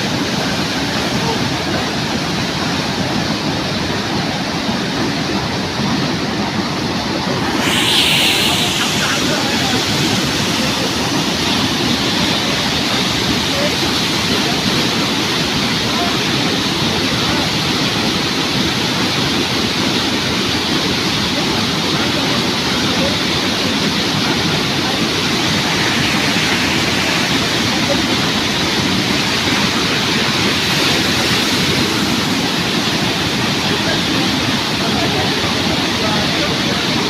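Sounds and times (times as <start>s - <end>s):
waterfall rushing: 0.0s - 37.0s.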